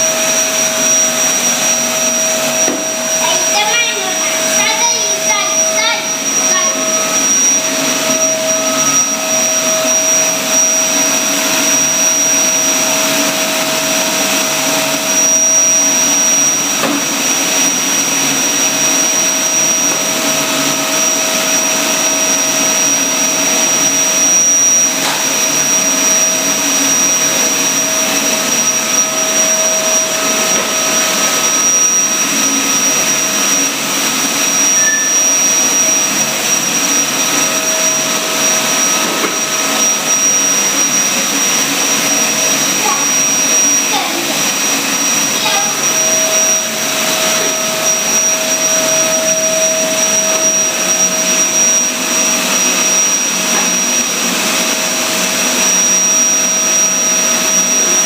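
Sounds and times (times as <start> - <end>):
vacuum cleaner running: 0.0 - 58.0.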